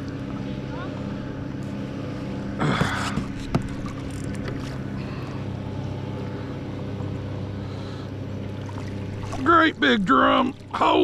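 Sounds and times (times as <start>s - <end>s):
steady low hum: 0.0s - 11.0s
water splashing: 8.5s - 11.0s.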